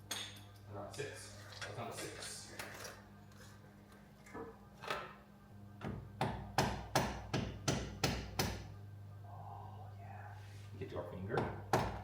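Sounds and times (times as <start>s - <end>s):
hammer tapping on engine parts: 5.8s - 8.7s, 11.3s - 12.0s.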